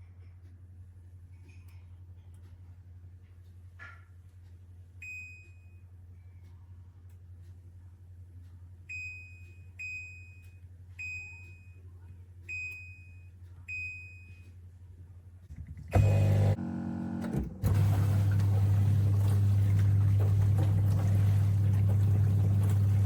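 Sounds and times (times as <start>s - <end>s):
low steady hum: 0.0s - 23.0s
dishwasher panel beeping: 16.0s - 16.6s.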